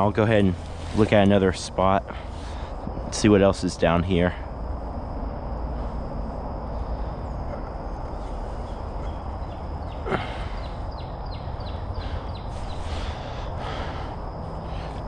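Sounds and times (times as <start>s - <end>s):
high steady whine: 0.0s - 15.0s
outdoor rushing rumble: 0.0s - 15.0s
bird call and chirps: 7.2s - 13.4s.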